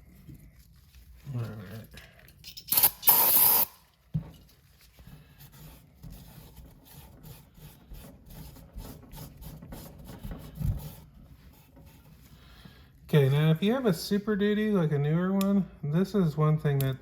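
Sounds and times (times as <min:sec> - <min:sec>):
short loud hiss: 0:02.7 - 0:03.8.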